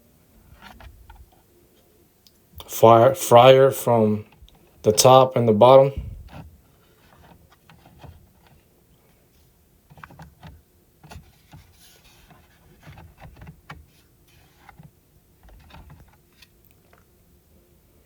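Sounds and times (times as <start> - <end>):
plastic scrape: 0.4 - 1.4, 6.1 - 8.7, 9.9 - 17.0.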